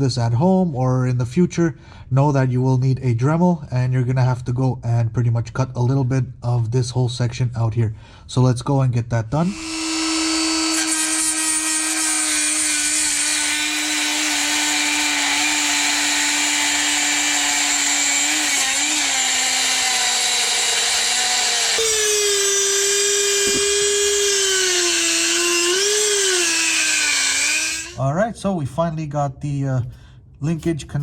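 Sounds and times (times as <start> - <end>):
rotary tool cutting metal: 9.5 - 28.0.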